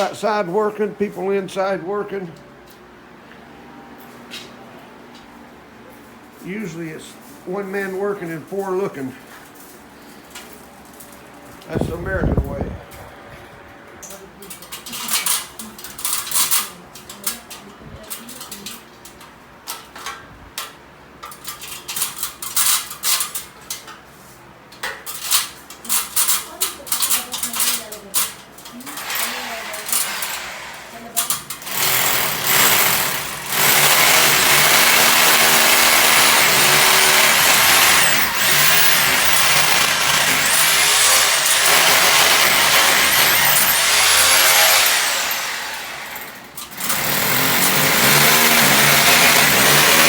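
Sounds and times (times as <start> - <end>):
power drill whining: 29.0 - 31.0, 31.6 - 50.0.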